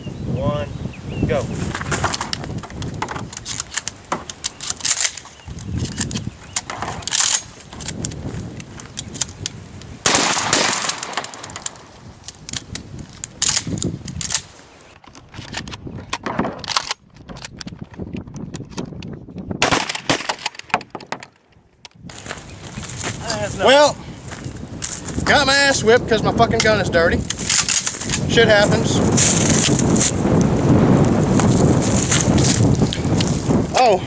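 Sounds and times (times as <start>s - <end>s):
shotgun loading clicks and clacks: 1.9s - 22.0s, 26.6s - 30.5s
loud gunshots: 10.0s - 11.4s, 19.6s - 20.4s.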